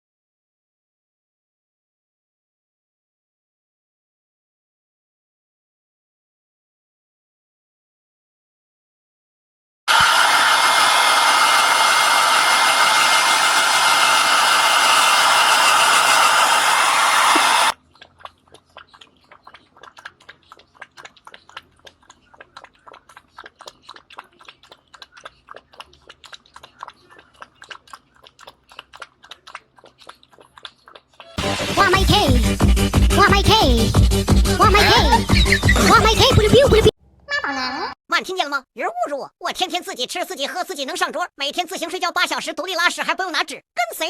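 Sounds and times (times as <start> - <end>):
hair dryer running: 9.9 - 17.8, 31.4 - 32.8
dog chewing: 17.8 - 31.4.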